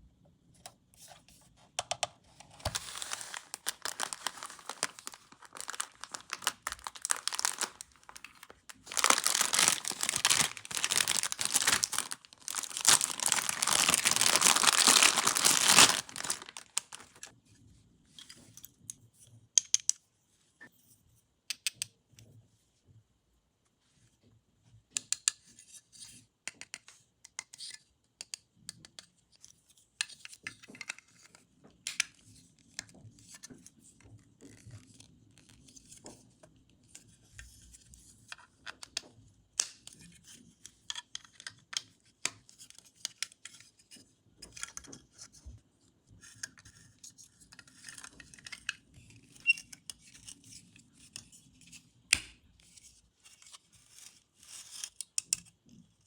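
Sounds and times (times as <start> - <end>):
packaging snapping: 2.5 - 17.3
plastic packaging crinkling: 2.5 - 17.3.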